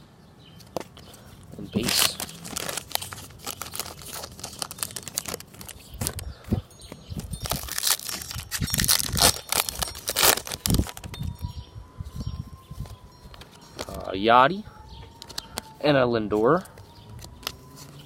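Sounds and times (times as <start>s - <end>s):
plastic wrapper crinkling and tearing: 1.8s - 6.2s, 7.2s - 11.5s.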